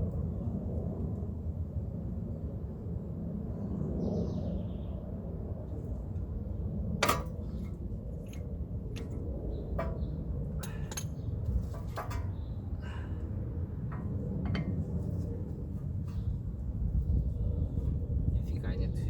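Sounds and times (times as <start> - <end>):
light metallic clicks: 9.8 - 12.4.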